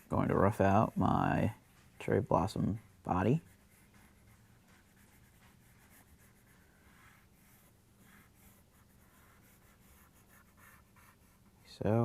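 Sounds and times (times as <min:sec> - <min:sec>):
pencil sketching on paper: 0:00.0 - 0:11.8.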